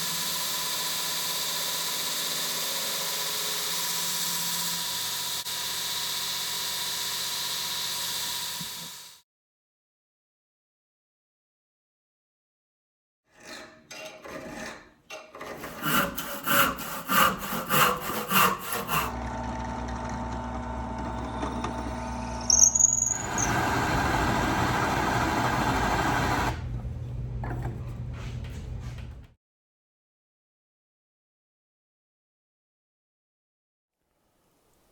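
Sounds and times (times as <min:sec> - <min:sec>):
hand tool filing strokes: 0:15.4 - 0:19.2
grinding noise: 0:15.4 - 0:27.0
electric machine humming: 0:18.6 - 0:22.5, 0:23.1 - 0:29.2.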